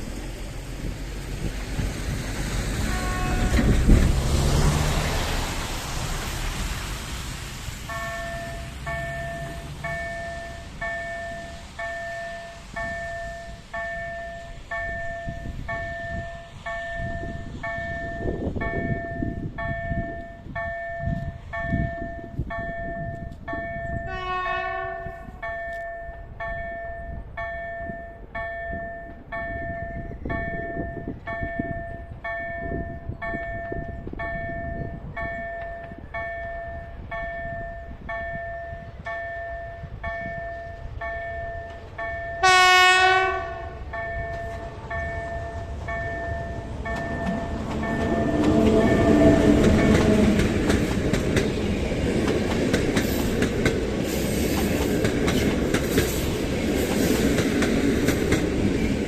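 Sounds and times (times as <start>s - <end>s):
train rumbling past: 0.0s - 59.0s
train horn: 2.8s - 5.0s, 23.9s - 25.7s, 42.4s - 44.8s, 47.5s - 50.6s
level-crossing electronic bell: 7.9s - 24.1s, 43.9s - 48.2s
crossing warning signal ringing: 7.9s - 56.6s.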